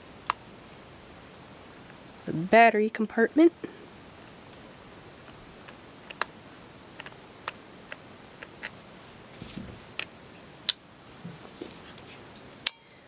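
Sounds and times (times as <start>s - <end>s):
soft rustle: 8.7s - 9.8s, 11.0s - 12.4s.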